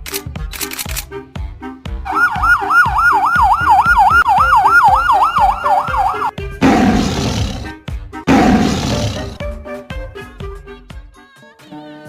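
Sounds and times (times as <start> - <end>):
background music with steady beat: 0.0 - 12.0
police siren wailing fast: 2.1 - 6.3.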